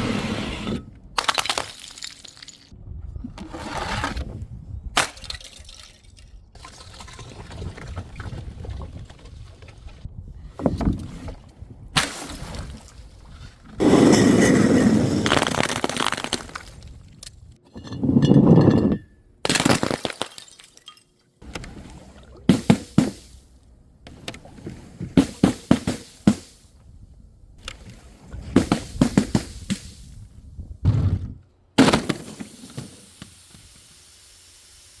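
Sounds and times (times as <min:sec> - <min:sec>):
glass bottles shattering: 0:01.2 - 0:02.7, 0:05.0 - 0:06.4, 0:17.7 - 0:21.2.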